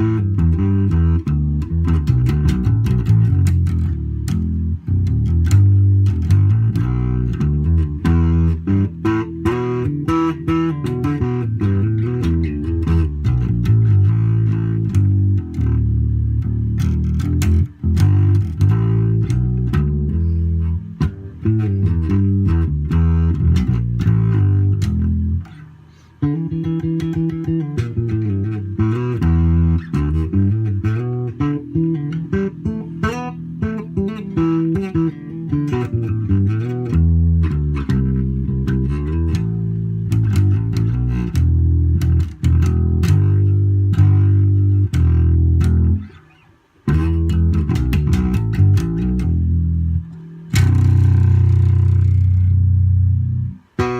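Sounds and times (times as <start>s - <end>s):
electric bass playing: 0.0s - 53.9s.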